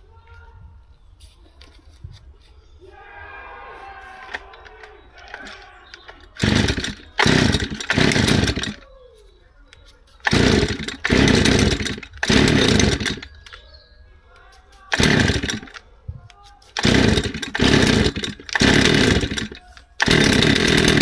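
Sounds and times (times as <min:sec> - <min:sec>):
brushcutter pull-start bursts: 0:04.2 - 0:08.8, 0:10.2 - 0:13.6, 0:14.9 - 0:15.8, 0:16.6 - 0:21.0.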